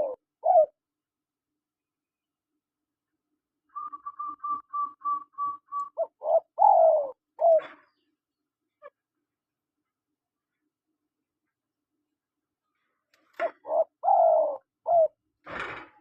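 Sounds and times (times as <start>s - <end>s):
dove cooing: 0.0s - 0.8s, 3.8s - 7.8s, 13.4s - 15.2s.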